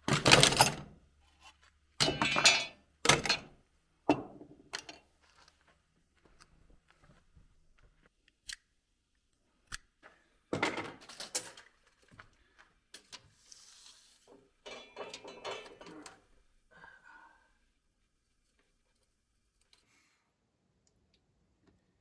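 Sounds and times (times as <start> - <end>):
tools clattering on workbench: 0.1 - 0.9, 2.0 - 3.5, 4.1 - 5.1, 10.6 - 11.7, 14.3 - 16.2.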